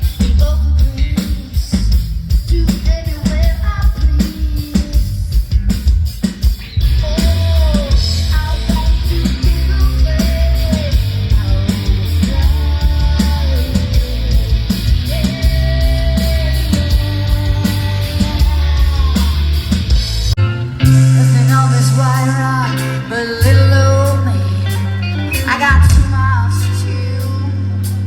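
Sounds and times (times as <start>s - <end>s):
rock band playing: 0.0s - 28.0s
bending guitar lead line: 6.6s - 28.0s.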